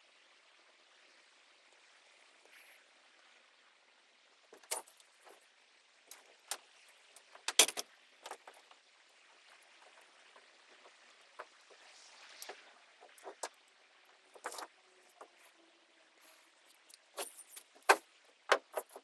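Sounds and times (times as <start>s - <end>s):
faint hiss: 0.0s - 19.0s
sharp knocks and clatters: 7.2s - 8.6s, 17.2s - 19.0s.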